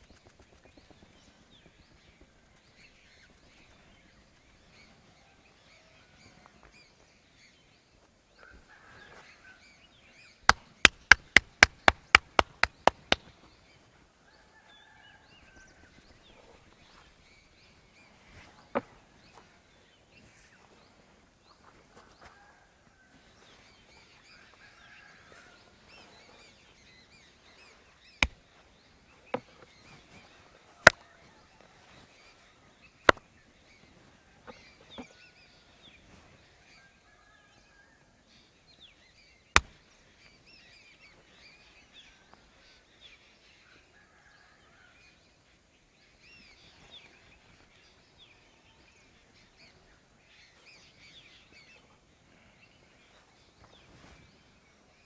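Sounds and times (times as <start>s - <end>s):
hands smacking during massage: 10.8s - 13.2s.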